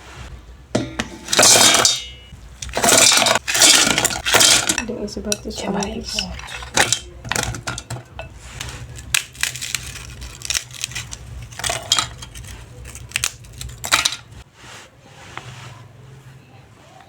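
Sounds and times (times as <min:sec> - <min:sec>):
steady low hum: 0:00.0 - 0:14.5
metal utensil scraping a dish: 0:00.8 - 0:08.8, 0:10.1 - 0:14.4.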